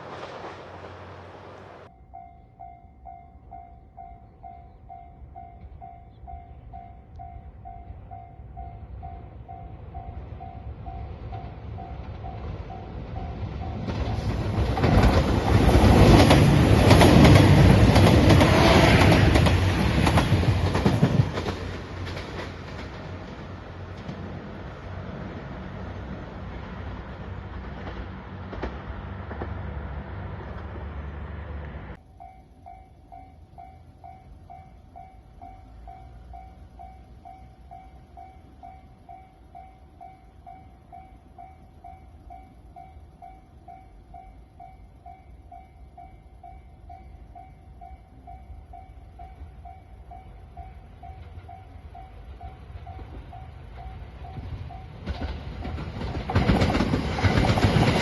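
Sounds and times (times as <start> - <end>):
train rumbling past: 0.0 - 58.0
level-crossing warning bell: 1.8 - 21.5, 31.9 - 58.0.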